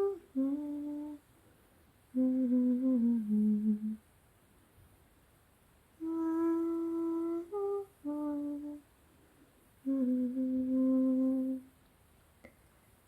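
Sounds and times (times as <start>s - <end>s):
woman humming a slow tune: 0.0s - 1.2s, 2.1s - 4.0s, 6.0s - 8.8s, 9.8s - 11.7s.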